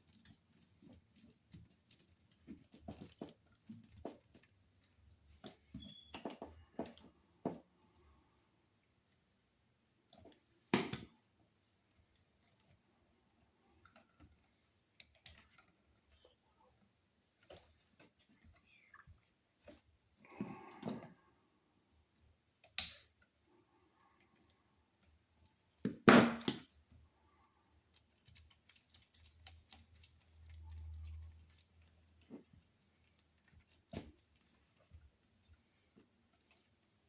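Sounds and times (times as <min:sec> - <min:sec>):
hand tools clicking on wires: 0:27.8 - 0:37.0.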